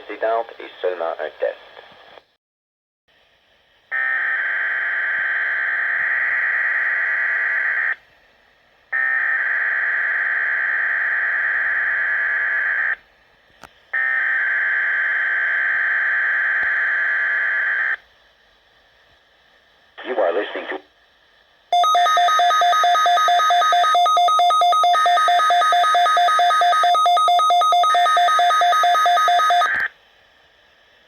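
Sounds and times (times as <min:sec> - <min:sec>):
warbling two-tone data bursts: 0:21.8 - 0:29.8.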